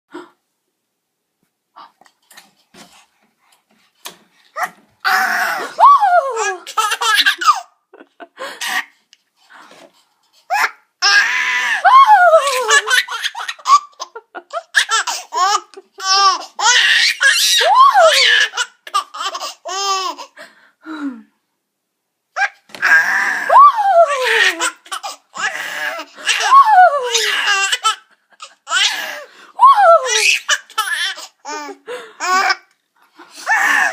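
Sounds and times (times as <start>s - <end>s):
baby laughing: 4.6s - 9.0s, 10.5s - 20.3s, 23.9s - 29.2s, 29.9s - 32.7s.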